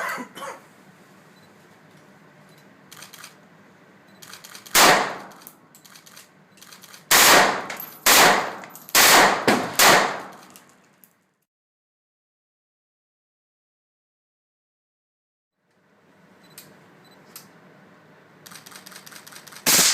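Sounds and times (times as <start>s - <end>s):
gun handling clicks and clangs: 4.2s - 9.0s, 10.2s - 11.4s
gunshots: 4.7s - 5.5s, 7.1s - 10.5s, 19.6s - 19.9s.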